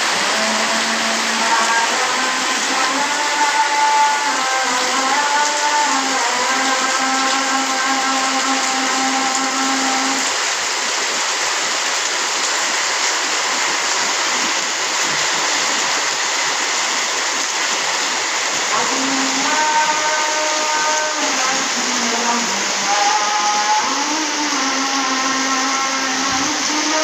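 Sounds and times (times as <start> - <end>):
heavy rain falling: 0.0 - 27.0.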